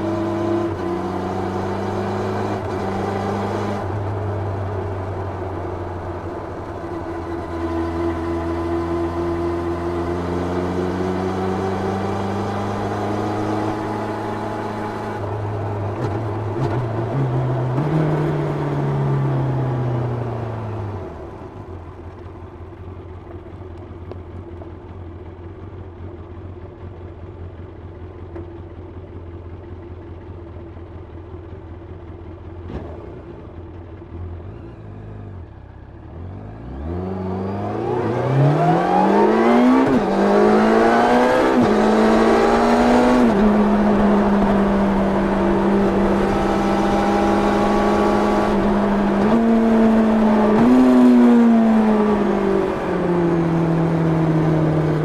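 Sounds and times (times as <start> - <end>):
motorcycle engine revving: 0.0 - 5.2, 6.7 - 20.4, 32.6 - 55.0.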